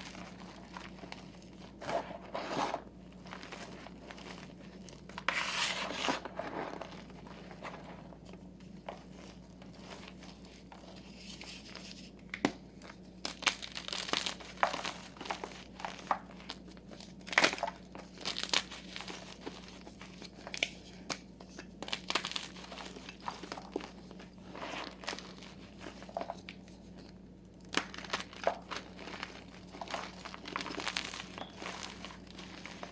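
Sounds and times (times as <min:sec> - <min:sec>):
chalk crunching by hand: 0:05.2 - 0:07.8.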